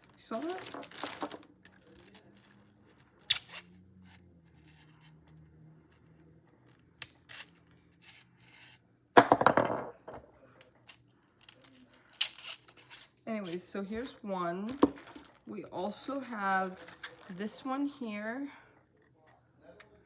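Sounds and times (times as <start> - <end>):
packaging rustling and clattering: 0.0 - 3.1, 14.0 - 17.8.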